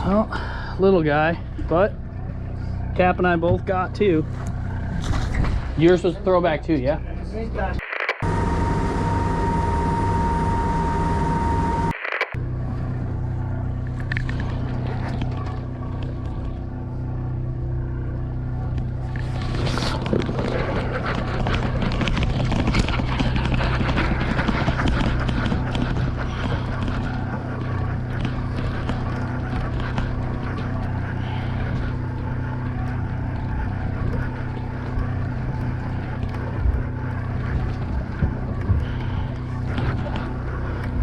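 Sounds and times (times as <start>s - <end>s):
wind: 0.0s - 10.3s, 11.9s - 41.0s
boat engine running: 0.0s - 41.0s
steady high whine: 0.0s - 41.0s
sea noise: 7.8s - 41.0s
gear clicking and knocking: 19.1s - 41.0s.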